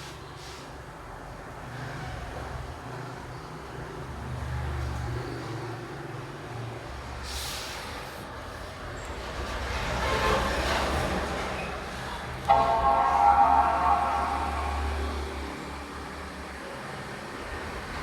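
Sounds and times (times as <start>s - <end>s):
road traffic rumble: 11.9s - 18.0s.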